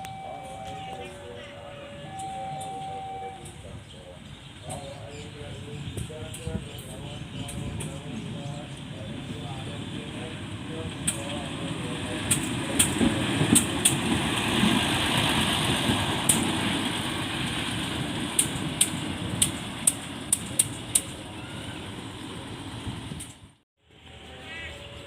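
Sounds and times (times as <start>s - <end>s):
train rumbling: 0.0s - 25.0s
wheels clacking on rail joints: 5.7s - 23.6s.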